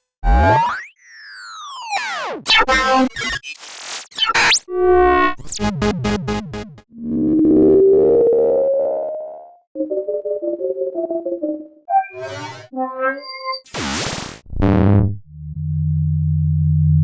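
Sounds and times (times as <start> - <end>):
falling electronic sweeps: 5.4 - 6.8
warbling electronic tone: 5.4 - 6.8.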